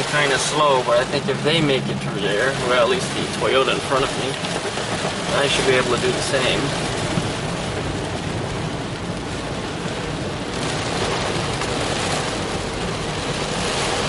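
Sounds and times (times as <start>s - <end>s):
heavy rain on a car: 0.0s - 14.0s.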